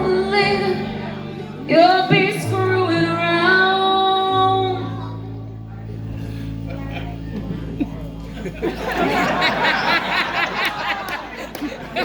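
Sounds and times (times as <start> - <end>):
rock band sustained low chords: 4.8 - 9.9.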